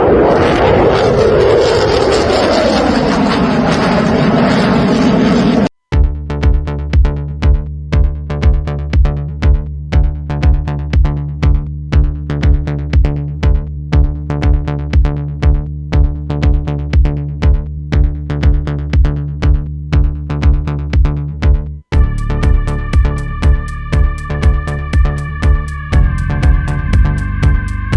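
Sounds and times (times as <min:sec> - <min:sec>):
electronic music with steady beat: 0:05.9 - 0:27.9.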